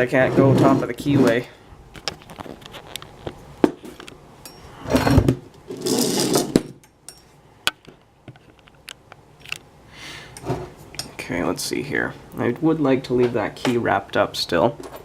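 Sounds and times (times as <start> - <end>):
rustling handling: 0.6 - 5.2.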